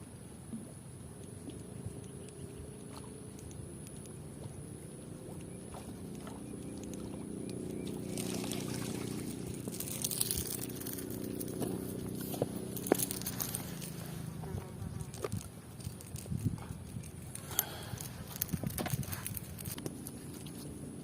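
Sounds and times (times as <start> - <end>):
boat motor humming: 0.5 - 21.0
water splashing: 2.8 - 15.7.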